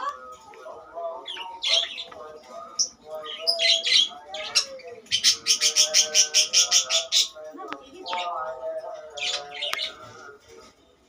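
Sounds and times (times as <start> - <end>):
budgerigar chirping and warbling: 1.2 - 2.1, 2.8 - 7.4.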